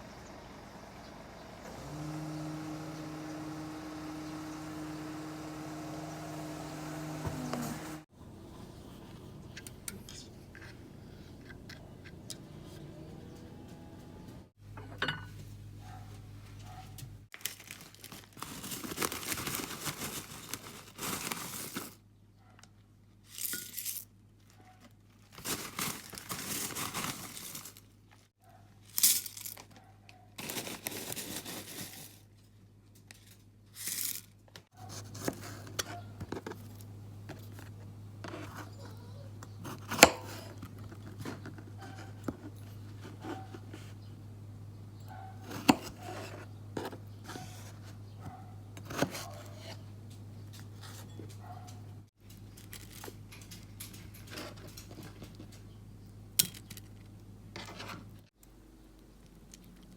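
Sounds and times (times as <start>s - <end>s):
rustling crinkling: 16.1s - 22.0s, 23.2s - 39.0s.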